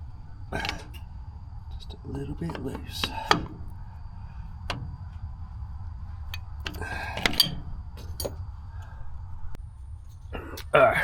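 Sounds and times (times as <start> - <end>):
wrench scraping: 0.0 - 1.1, 1.7 - 9.0
low steady rumble: 0.0 - 11.0.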